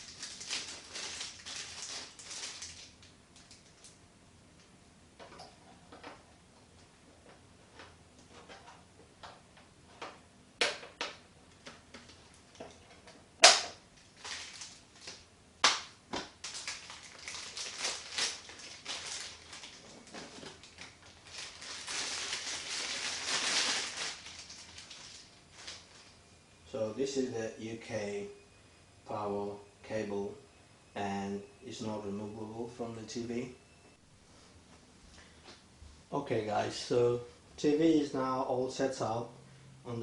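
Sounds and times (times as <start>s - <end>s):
rustling: 0.0s - 4.0s, 13.9s - 15.2s, 16.4s - 26.2s.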